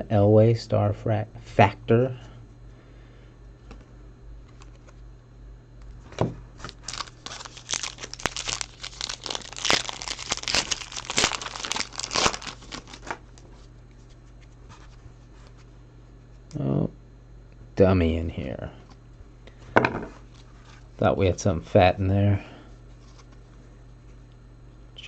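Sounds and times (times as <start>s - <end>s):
wrapper tearing and crinkling: 6.6s - 13.4s.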